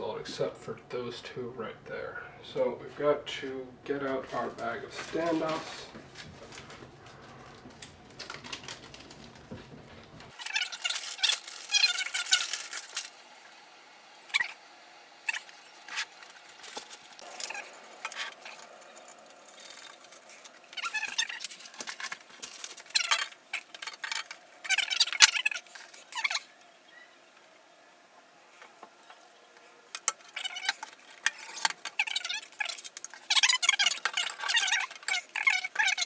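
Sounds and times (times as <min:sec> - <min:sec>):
plastic bag crinkling: 0:04.0 - 0:14.6, 0:15.2 - 0:26.5, 0:30.0 - 0:36.0
small metal parts clicking: 0:15.3 - 0:26.4.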